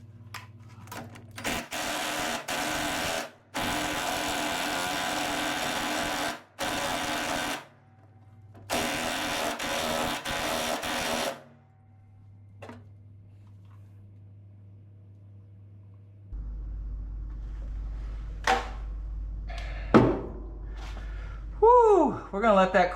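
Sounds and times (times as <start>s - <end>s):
impact wrench hammering: 1.5s - 7.6s, 8.7s - 11.4s
low steady hum: 11.6s - 22.9s.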